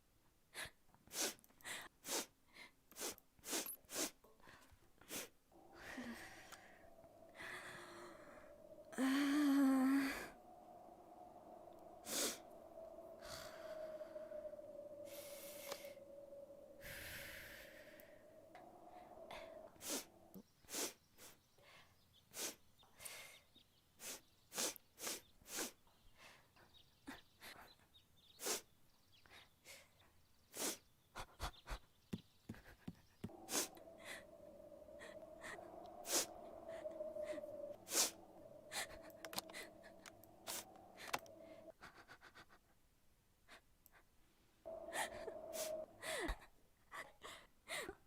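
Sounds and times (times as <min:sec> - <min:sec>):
short sharp breaths: 0:03.0 - 0:21.4, 0:33.2 - 0:41.7, 0:44.7 - 0:46.4
faint steady hum: 0:05.3 - 0:20.6, 0:33.2 - 0:41.8, 0:43.6 - 0:48.0
mouth noises: 0:32.8 - 0:42.6.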